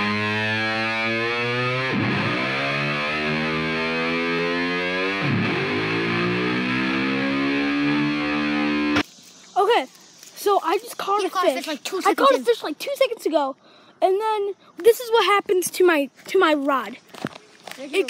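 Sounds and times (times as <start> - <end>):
distorted electric guitar chords: 0.0 - 9.0.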